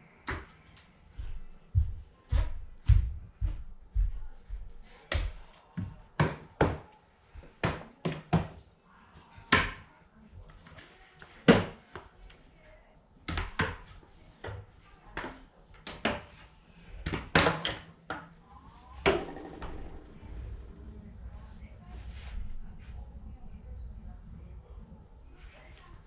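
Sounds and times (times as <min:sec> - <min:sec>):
household objects knocking: 0:19.0 - 0:20.5.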